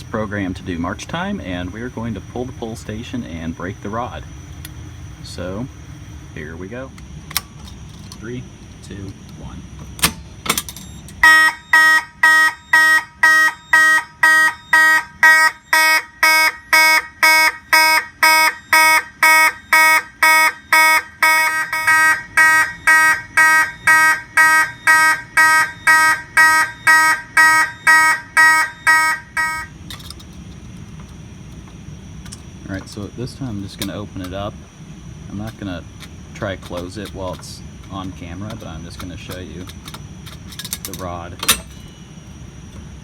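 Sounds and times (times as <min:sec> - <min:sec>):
mechanical fire alarm horn buzzing: 0:09.2 - 0:43.0.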